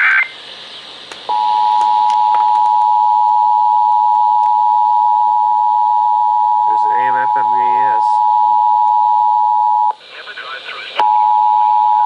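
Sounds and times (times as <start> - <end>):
loud steady alert tone: 1.3 - 9.9.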